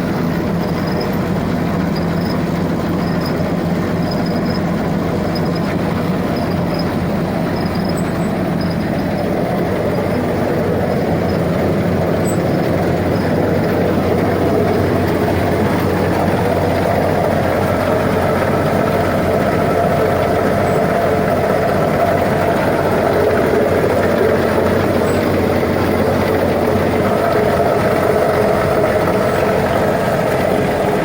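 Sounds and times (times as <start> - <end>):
combine harvester running: 0.0 - 31.0.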